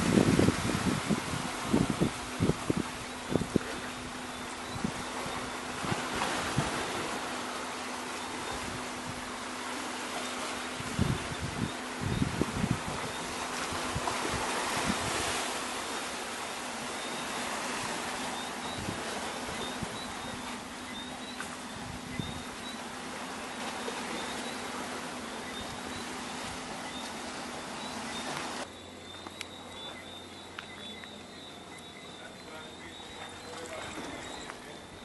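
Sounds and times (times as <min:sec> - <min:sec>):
wind noise on microphone: 0:00.0 - 0:07.0, 0:10.8 - 0:15.4, 0:18.7 - 0:20.4, 0:21.7 - 0:22.6
ocean surf rushing: 0:04.9 - 0:22.0
faint high chirping: 0:23.5 - 0:35.0.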